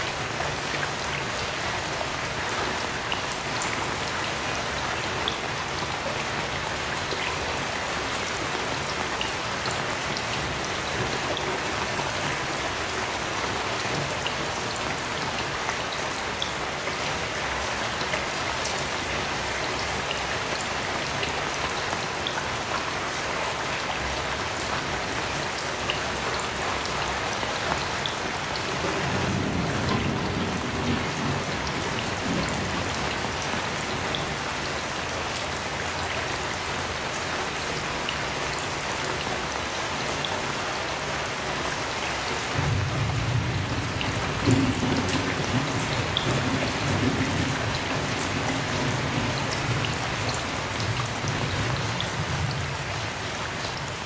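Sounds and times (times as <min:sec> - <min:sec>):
heavy rain falling: 0:00.0 - 0:54.0
distant thunder rumble: 0:28.7 - 0:34.4, 0:42.5 - 0:53.1.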